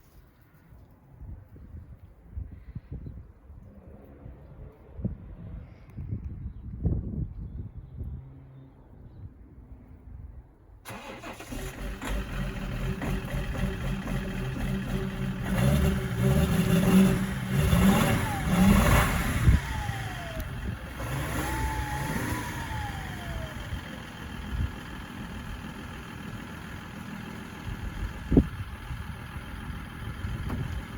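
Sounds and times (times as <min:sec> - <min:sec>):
diesel engine misfiring: 0:10.9 - 0:30.9.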